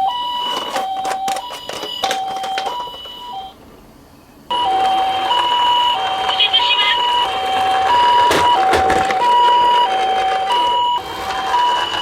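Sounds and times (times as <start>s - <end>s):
toy two-tone siren: 0.0s - 3.5s, 4.5s - 12.0s
plastic clicking and clattering: 0.4s - 3.2s, 6.2s - 12.0s.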